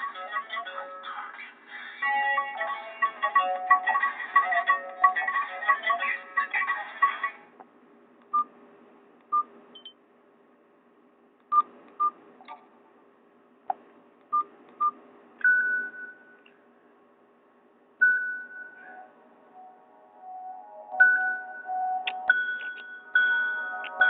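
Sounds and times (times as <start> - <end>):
ringtone melody: 2.0 - 5.8, 18.0 - 24.0.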